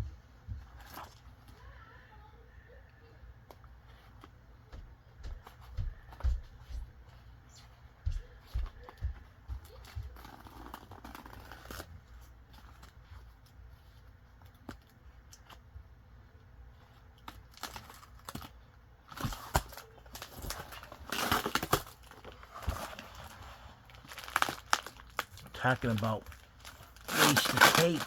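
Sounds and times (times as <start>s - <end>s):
packing tape tearing: 10.1s - 12.0s, 17.2s - 18.5s, 19.1s - 28.0s
packaging crinkling: 17.2s - 28.0s.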